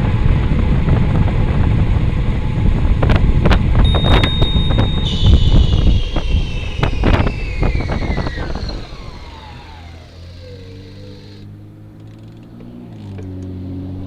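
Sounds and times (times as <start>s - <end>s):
wind and road noise from bicycle: 0.0s - 14.0s
thin whine falling in pitch: 3.8s - 11.5s.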